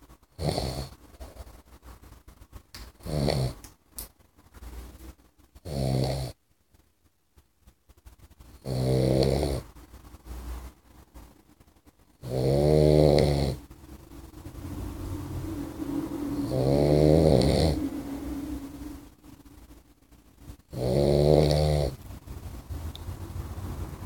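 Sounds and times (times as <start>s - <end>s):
puppy snoring: 0.3s - 1.4s, 3.0s - 3.6s, 5.6s - 6.4s, 8.5s - 9.8s, 12.2s - 13.6s, 16.3s - 19.1s, 20.6s - 22.0s.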